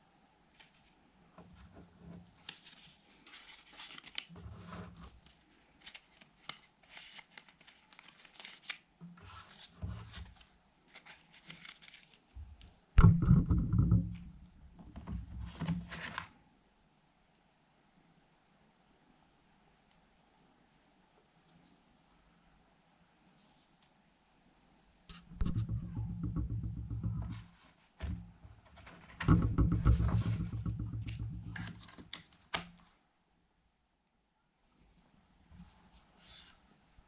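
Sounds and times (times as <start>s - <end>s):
packaging crinkling and tearing: 2.5s - 4.3s, 5.2s - 9.6s, 10.3s - 12.3s
rustling and bumping: 12.4s - 16.3s, 25.1s - 32.7s.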